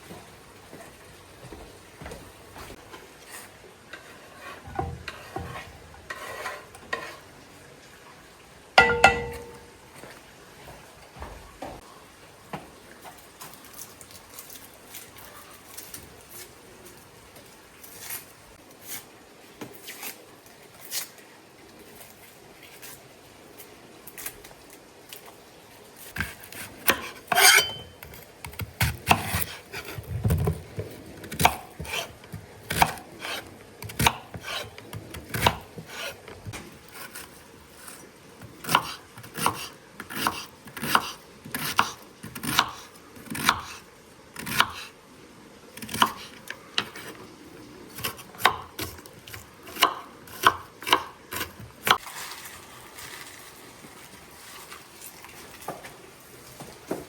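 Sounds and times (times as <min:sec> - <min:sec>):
knife chopping on wooden board: 0:31.3 - 0:32.1, 0:32.7 - 0:36.2, 0:48.0 - 0:52.0.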